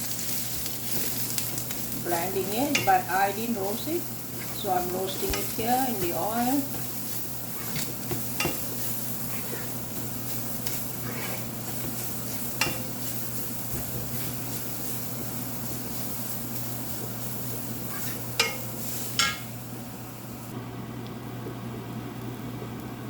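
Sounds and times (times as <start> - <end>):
spice paste sizzling in oil: 0.0 - 20.5
steady low hum: 0.0 - 23.0
spoon clinking against pot: 8.4 - 8.6, 12.6 - 12.9, 18.0 - 19.5.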